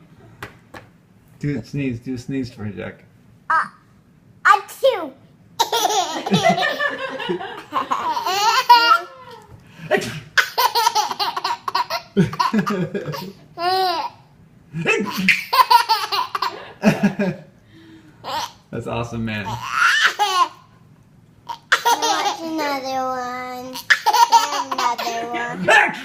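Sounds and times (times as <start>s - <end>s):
baby laughing: 5.6s - 14.2s, 14.8s - 17.2s, 18.2s - 18.7s, 19.4s - 20.7s, 21.5s - 25.7s
adult fake sneeze: 9.9s - 10.4s.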